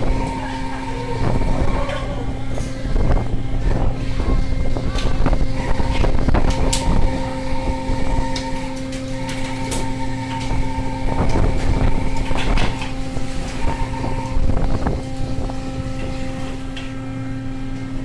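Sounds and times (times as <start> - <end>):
boat engine droning: 0.0 - 18.0.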